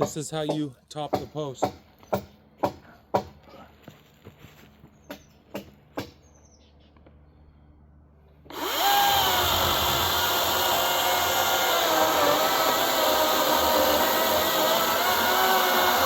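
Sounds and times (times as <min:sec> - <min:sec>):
power tool whining: 0:08.4 - 0:16.0.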